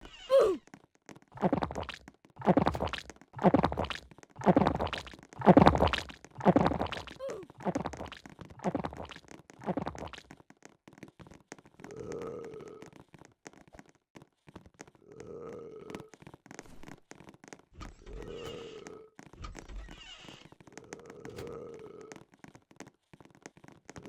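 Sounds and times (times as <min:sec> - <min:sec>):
person making throaty sounds: 0:00.0 - 0:00.6, 0:01.4 - 0:10.2.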